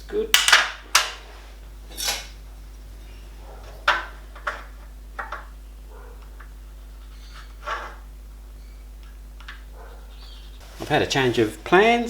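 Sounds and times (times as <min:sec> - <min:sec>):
metal parts knocking and clinking: 0:00.4 - 0:01.2.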